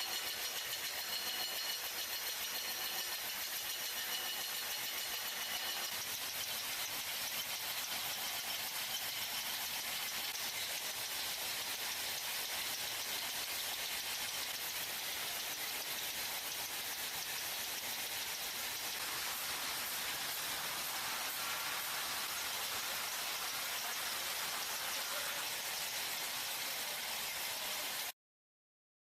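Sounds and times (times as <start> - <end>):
machinery hissing: 14.2 - 28.1.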